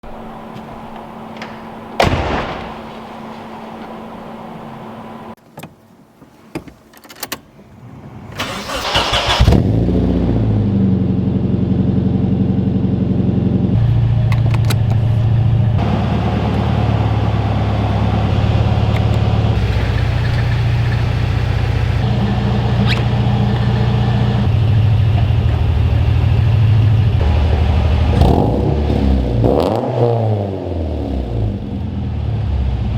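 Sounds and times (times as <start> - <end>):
car engine starting and idling: 0.0 - 5.4, 7.8 - 32.9
engine revving: 8.3 - 14.2, 15.7 - 32.9.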